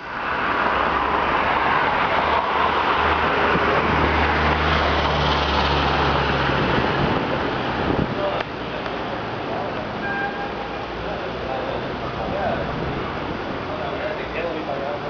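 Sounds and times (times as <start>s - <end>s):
rushing street noise: 0.0s - 15.0s
vehicle engine hum: 0.0s - 15.0s.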